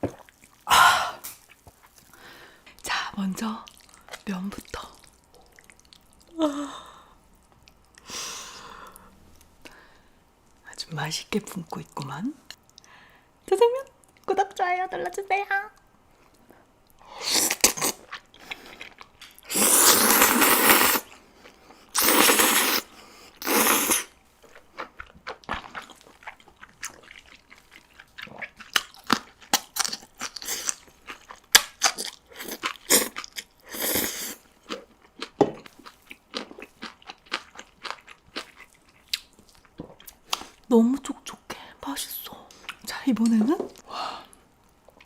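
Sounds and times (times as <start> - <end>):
chewing with small clicks: 3.6 - 6.3, 11.6 - 13.0, 24.4 - 33.6, 34.6 - 41.4
noodle slurping: 19.4 - 21.2, 21.9 - 24.1.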